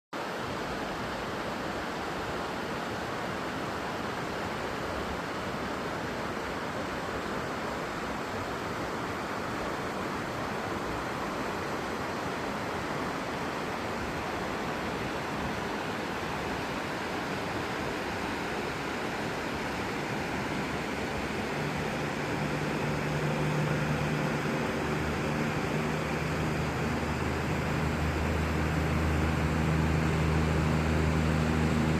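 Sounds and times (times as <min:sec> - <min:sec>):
stream rushing over rocks: 0:00.2 - 0:31.9
low steady hum: 0:19.6 - 0:31.9.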